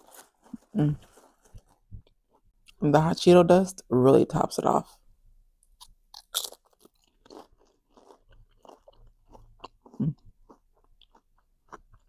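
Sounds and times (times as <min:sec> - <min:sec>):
crunchy bite: 0:05.8 - 0:12.0
mouth chewing: 0:05.8 - 0:12.0
low throat sound: 0:10.0 - 0:10.3.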